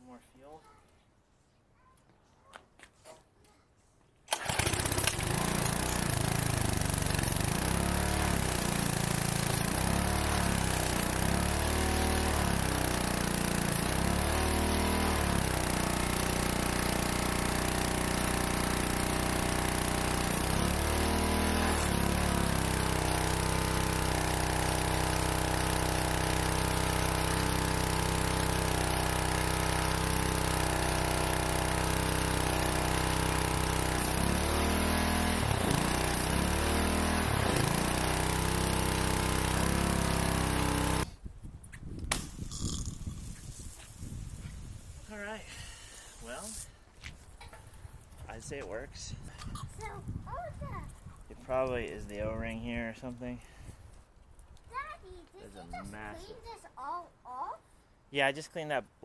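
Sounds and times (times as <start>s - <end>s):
small engine running: 4.3s - 41.1s.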